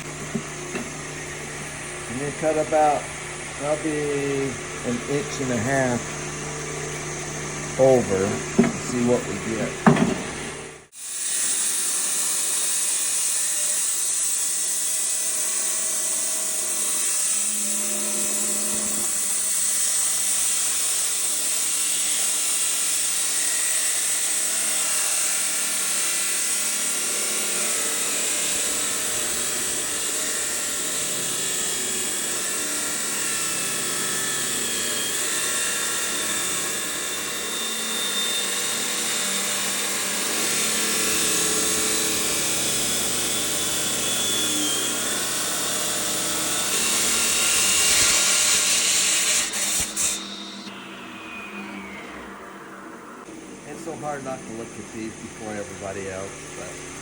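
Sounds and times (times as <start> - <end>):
rock saw cutting stone: 0.0 - 53.0, 53.6 - 57.0.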